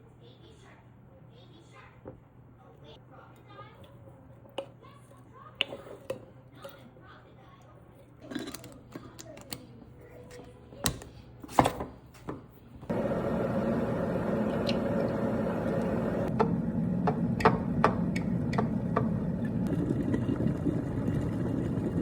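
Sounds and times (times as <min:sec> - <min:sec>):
steady droning noise: 0:12.9 - 0:18.1.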